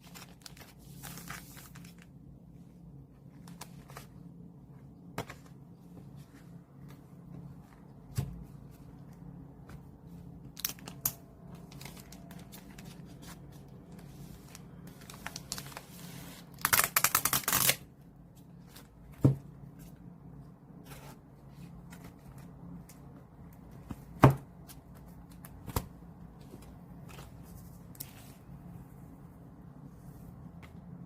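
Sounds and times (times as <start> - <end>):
packaging and cards rustling: 0.0 - 2.2, 5.1 - 17.8.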